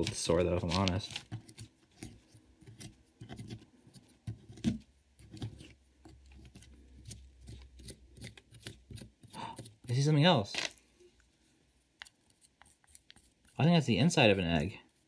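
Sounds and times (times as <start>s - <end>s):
tool scraping plaster: 6.8s - 9.9s.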